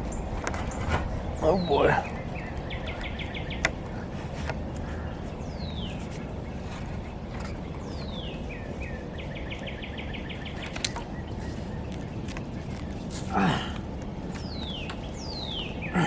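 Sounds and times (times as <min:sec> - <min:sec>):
songbird whistling and trilling: 0:00.1 - 0:03.7, 0:07.4 - 0:12.2, 0:14.3 - 0:16.0.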